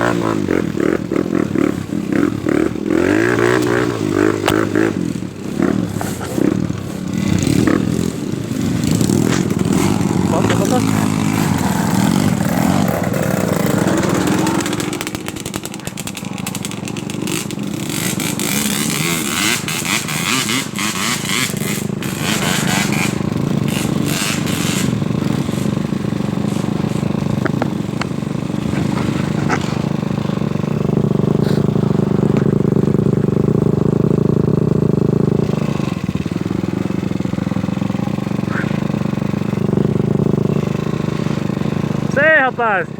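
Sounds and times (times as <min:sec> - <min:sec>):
motorcycle engine running: 0:00.0 - 0:42.9
knocks and rattles: 0:26.5 - 0:29.9.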